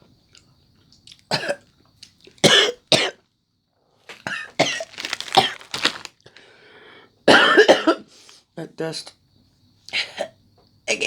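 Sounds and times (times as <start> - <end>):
person coughing: 4.3 - 5.8, 7.3 - 8.0.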